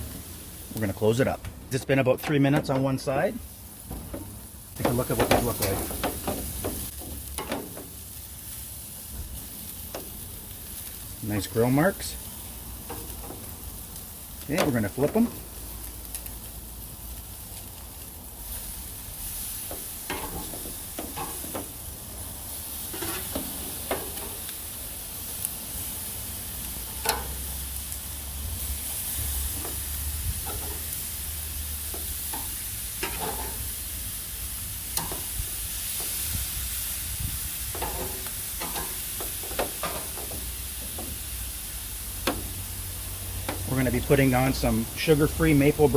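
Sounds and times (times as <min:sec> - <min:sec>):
meat sizzling on a grill: 0:00.0 - 0:45.9
metal utensil scraping grates: 0:22.9 - 0:24.4, 0:30.4 - 0:30.9, 0:31.9 - 0:33.7, 0:37.7 - 0:41.2.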